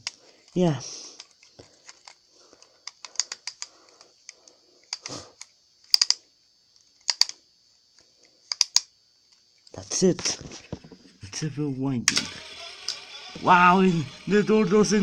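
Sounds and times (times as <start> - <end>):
toy launcher ratchet clicking: 12.1 - 15.0.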